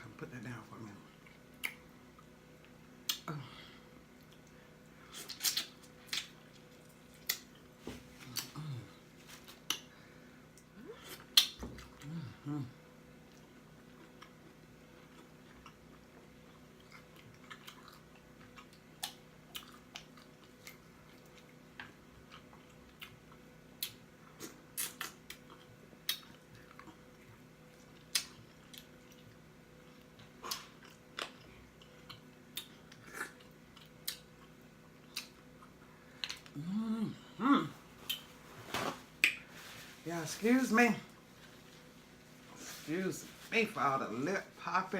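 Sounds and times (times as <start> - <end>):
wet chewing with lip smacks: 13.2 - 36.5.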